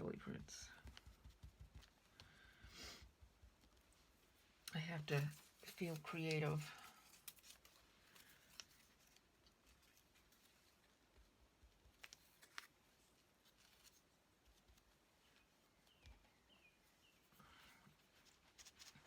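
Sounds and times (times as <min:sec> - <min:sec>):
paper being handled: 0:05.0 - 0:19.0.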